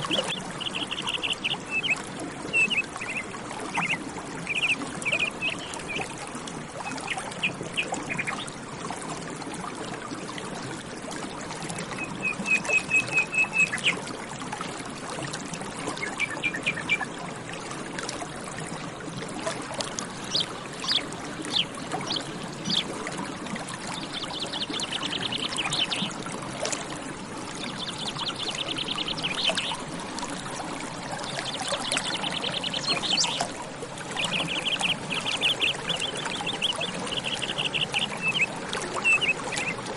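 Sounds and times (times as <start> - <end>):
small birds singing: 0.0 - 6.1, 6.8 - 8.5, 12.0 - 14.0, 16.0 - 17.1, 20.2 - 22.9, 23.9 - 26.2, 27.6 - 29.8, 31.1 - 33.6, 34.2 - 39.8
water trickling and pouring: 0.0 - 39.9.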